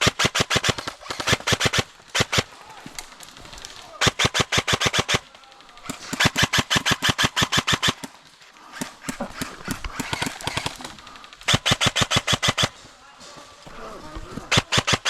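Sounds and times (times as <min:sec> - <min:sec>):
airsoft guns firing: 0:00.0 - 0:15.0.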